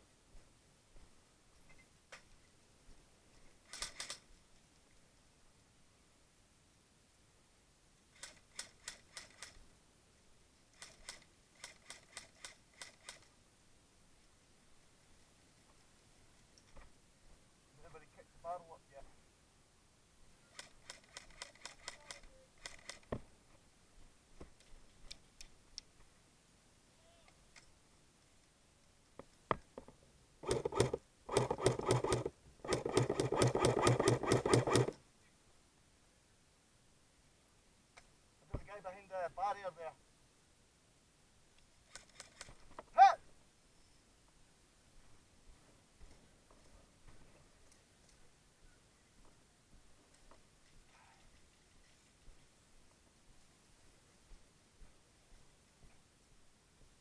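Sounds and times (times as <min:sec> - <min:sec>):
airsoft gun firing full auto: 0:30.4 - 0:35.0.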